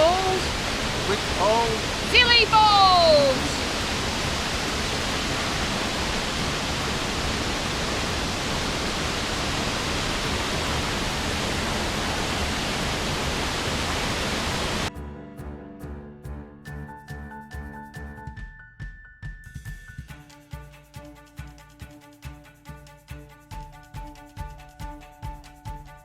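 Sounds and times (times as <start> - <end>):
music: 0.0 - 13.0, 14.9 - 26.0
waterfall pouring: 0.0 - 14.9.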